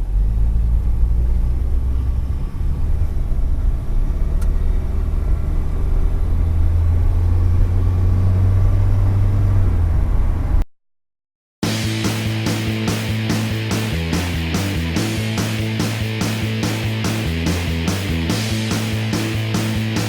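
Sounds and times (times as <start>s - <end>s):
truck engine and road rumble: 0.0s - 10.7s.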